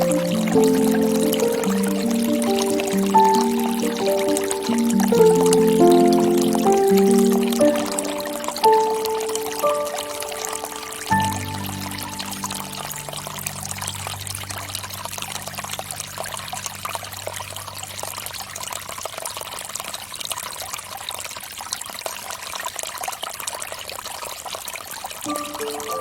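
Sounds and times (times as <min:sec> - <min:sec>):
low sustained music tones: 0:00.0 - 0:19.1, 0:25.3 - 0:26.0
fountain water trickling: 0:00.0 - 0:26.0.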